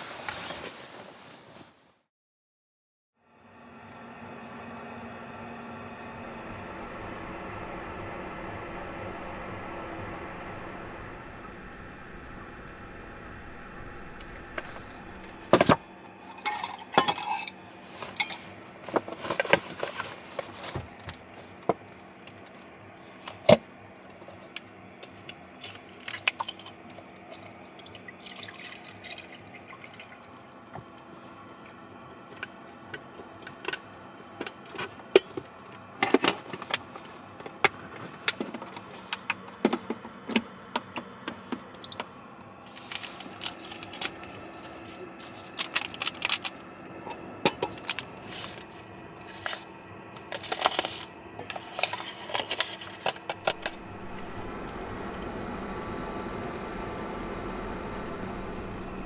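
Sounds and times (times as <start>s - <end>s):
dishes and cookware clinking: 16.3s - 18.6s.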